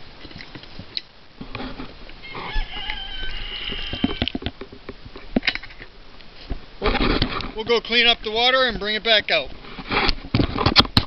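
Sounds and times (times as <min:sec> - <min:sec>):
rooster crowing: 0:02.2 - 0:04.5
sharp knocks and clatter: 0:09.8 - 0:11.0.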